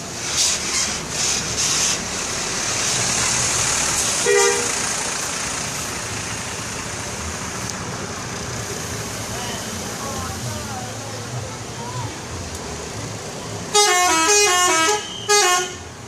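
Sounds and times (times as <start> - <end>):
traffic and engine noise: 0.0 - 16.0
bus horn toot: 4.2 - 4.8, 13.7 - 15.9.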